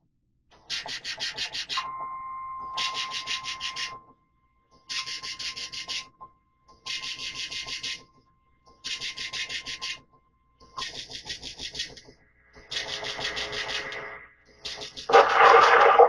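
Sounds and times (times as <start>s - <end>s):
steady alarm tone: 1.8s - 8.5s, 12.5s - 16.0s.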